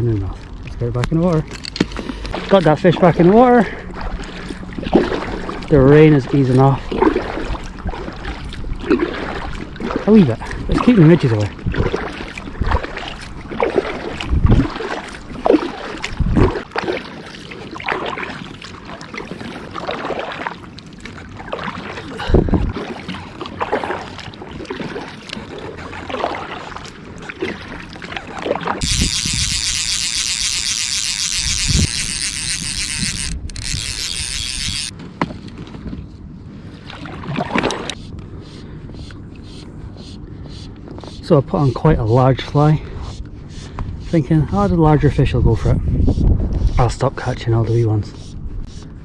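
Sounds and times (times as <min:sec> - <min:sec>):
water slapping against kayak: 0:00.7 - 0:33.6, 0:36.8 - 0:38.0.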